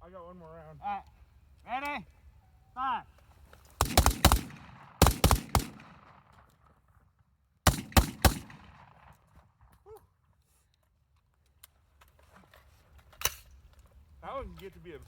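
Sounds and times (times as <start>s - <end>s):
rifle volleys: 3.8s - 6.4s, 7.7s - 9.2s.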